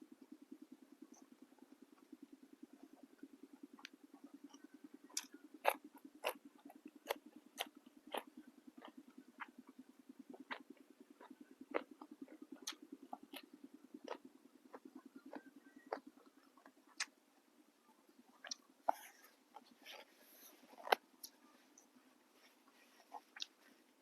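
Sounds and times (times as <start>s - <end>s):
fast-pulsing low hum: 0.0s - 24.0s
mouth clicks: 3.2s - 17.2s, 18.4s - 20.1s, 20.7s - 21.9s, 23.1s - 23.6s
person chewing raw vegetables: 3.7s - 9.6s, 10.3s - 17.1s, 18.3s - 21.9s, 22.9s - 23.6s.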